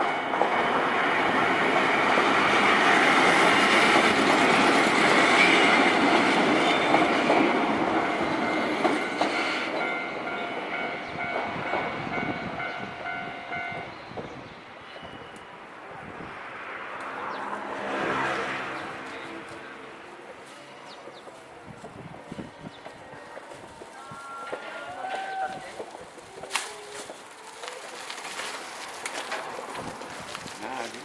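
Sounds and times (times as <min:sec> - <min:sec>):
crossing warning bell ringing: 0:00.0 - 0:03.6, 0:05.2 - 0:14.1, 0:14.8 - 0:15.7
train wheels clacking on rails: 0:00.0 - 0:14.4.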